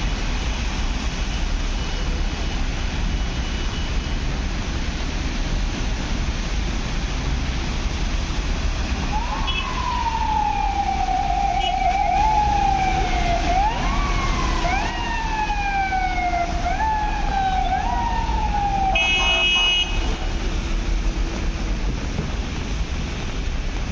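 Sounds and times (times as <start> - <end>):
street noise: 0.0 - 23.9
emergency vehicle siren: 8.6 - 21.2
blaring horn blast: 19.0 - 20.3.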